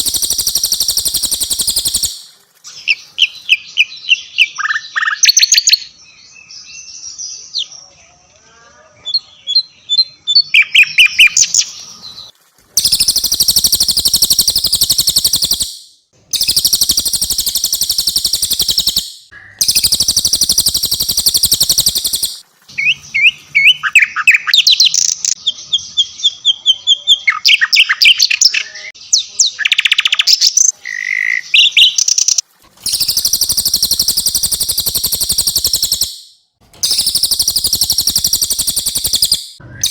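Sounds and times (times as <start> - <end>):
bird chirps and whistles: 0.0 - 2.3, 12.8 - 25.0, 32.9 - 39.9
songbird rolling trills: 0.0 - 2.9, 12.8 - 23.7, 32.8 - 39.9.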